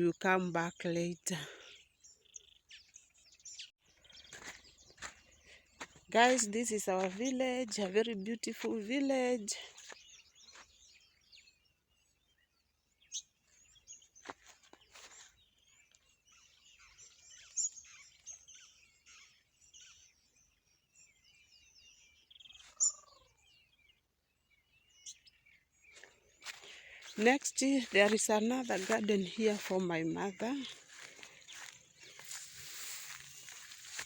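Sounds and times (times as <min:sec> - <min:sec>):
birds chirping and twittering: 0:00.0 - 0:34.0.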